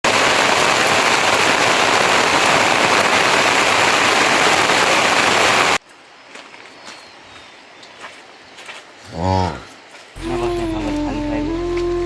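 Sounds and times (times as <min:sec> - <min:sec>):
heavy rain: 0:00.0 - 0:05.8, 0:10.2 - 0:12.0.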